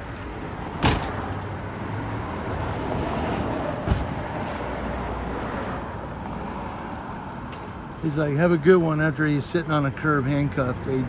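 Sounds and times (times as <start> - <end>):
vehicle passing: 0.3 - 7.4
sharp thump: 3.8 - 4.2.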